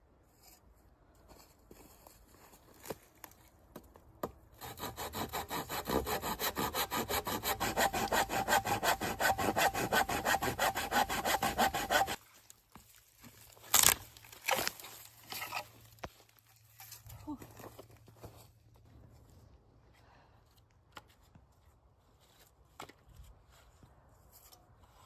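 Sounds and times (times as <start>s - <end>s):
hand saw cutting wood: 4.6s - 12.2s.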